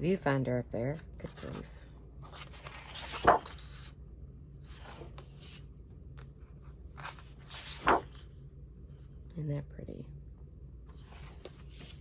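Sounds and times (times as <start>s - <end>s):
paper sheets rustling: 1.2s - 3.8s, 7.0s - 8.2s.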